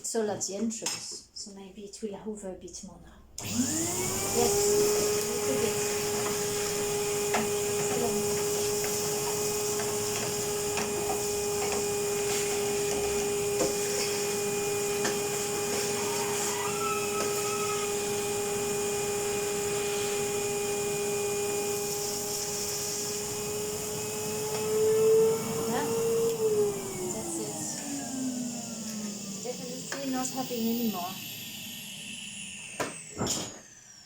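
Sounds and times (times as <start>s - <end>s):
vacuum cleaner motor humming: 3.4s - 34.0s.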